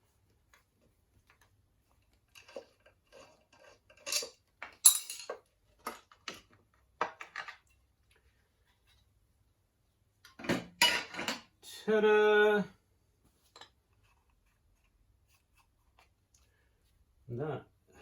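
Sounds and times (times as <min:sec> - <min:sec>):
metal tools clinking and clanking: 0:02.4 - 0:06.4.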